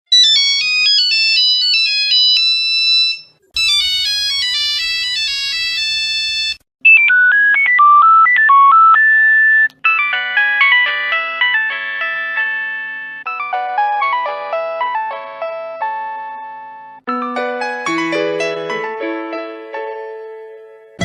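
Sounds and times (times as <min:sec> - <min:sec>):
mobile phone ringtones: 0:00.2 - 0:17.0.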